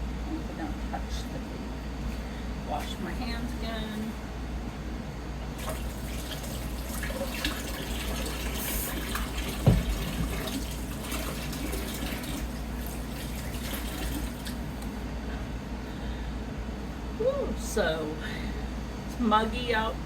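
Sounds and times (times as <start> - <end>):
tap running into sink: 5.6 - 14.6
hands washing: 5.6 - 14.9.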